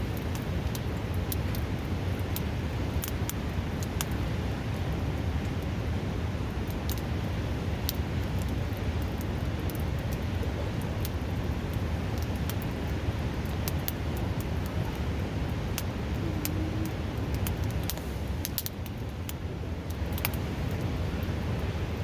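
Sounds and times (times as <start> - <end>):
campfire crackling and popping: 0.0 - 22.0
river rushing: 9.8 - 22.0.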